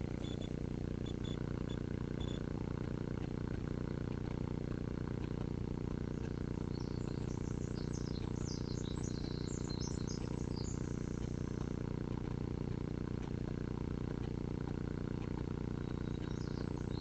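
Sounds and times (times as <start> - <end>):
small bird twittering: 0.0 - 2.4, 6.1 - 11.8, 15.8 - 17.0
steady low hum: 0.0 - 17.0.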